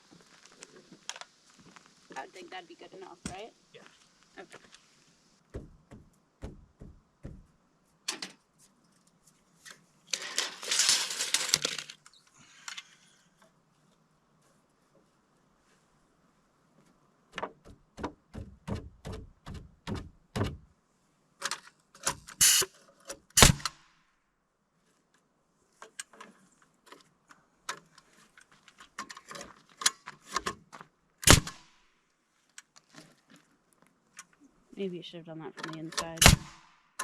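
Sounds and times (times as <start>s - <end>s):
hammer striking nails into wood: 5.5s - 7.5s.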